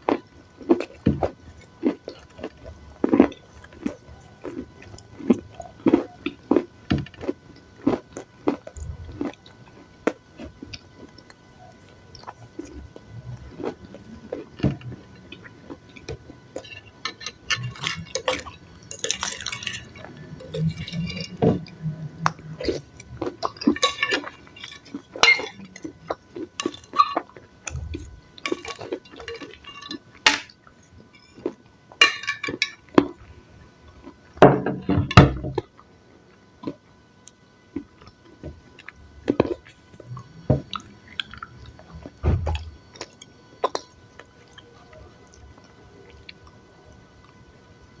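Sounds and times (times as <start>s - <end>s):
chewing and crunching salad: 0.0s - 34.4s, 35.1s - 47.5s
utensil clinking against dish: 16.6s - 21.7s, 23.4s - 25.9s, 28.4s - 30.5s, 32.0s - 32.8s.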